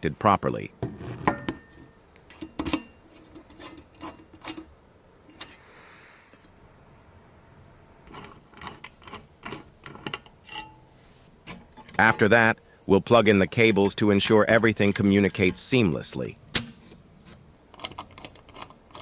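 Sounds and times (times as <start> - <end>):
soft rubbing hiss: 0.1 - 17.6
metal and plastic parts clicking: 0.8 - 4.7, 5.3 - 5.6, 8.1 - 10.8, 13.4 - 19.0.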